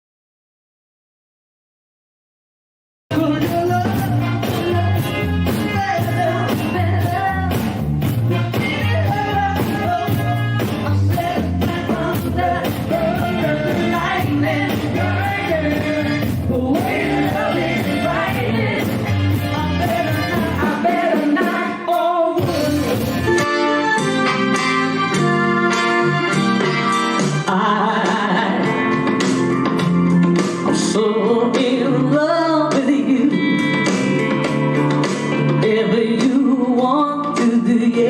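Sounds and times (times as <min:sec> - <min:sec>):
live rock band with singer: 0:03.1 - 0:38.0.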